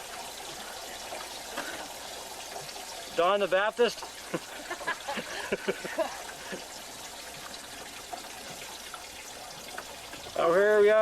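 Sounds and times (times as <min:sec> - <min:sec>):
water drips and plops: 0:00.0 - 0:11.0
water trickling and splashing: 0:00.0 - 0:11.0.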